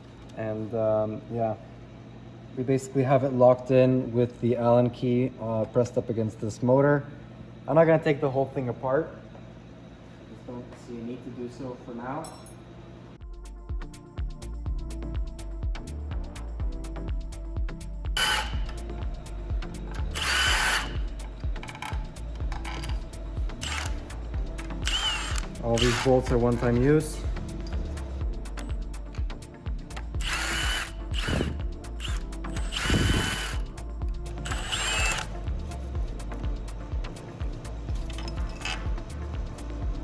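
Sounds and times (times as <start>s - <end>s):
music with kick drums and hi-hats: 13.2s - 40.0s
power drill whining: 18.2s - 18.9s, 19.8s - 26.9s, 30.0s - 33.7s, 34.4s - 35.4s.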